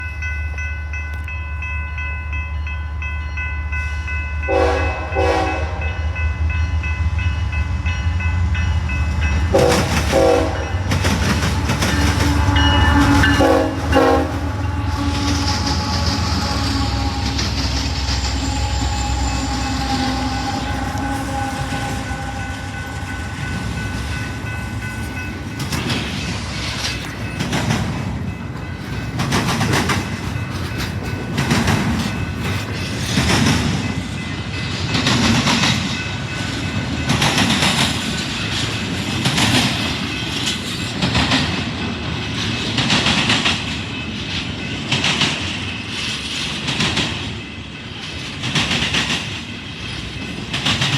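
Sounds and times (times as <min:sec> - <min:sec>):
train rumbling by: 0:00.0 - 0:50.9
locomotive air horn chord: 0:04.4 - 0:06.1, 0:09.5 - 0:10.8, 0:11.4 - 0:23.1
wheels clacking over rail joints: 0:09.0 - 0:19.1, 0:19.8 - 0:50.9.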